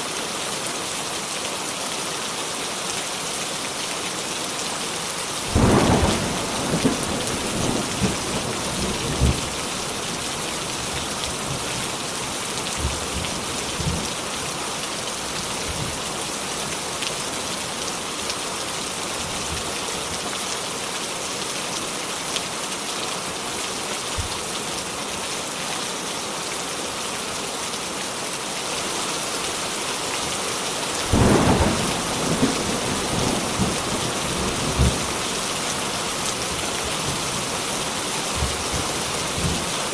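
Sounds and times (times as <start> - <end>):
steady rain hissing: 0.0 - 39.9
thunder: 5.5 - 9.6.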